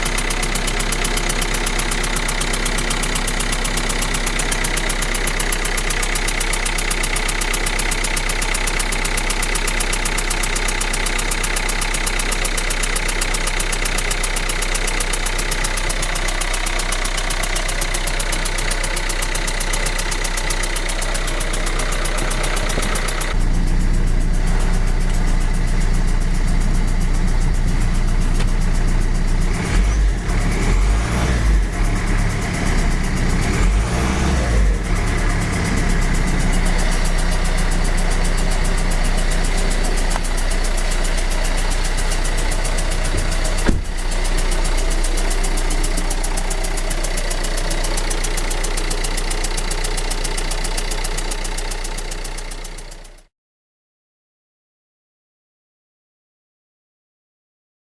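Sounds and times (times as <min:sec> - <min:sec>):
diesel engine idling with rattle: 0:00.0 - 0:53.3
uneven low bumps: 0:39.5 - 0:45.6.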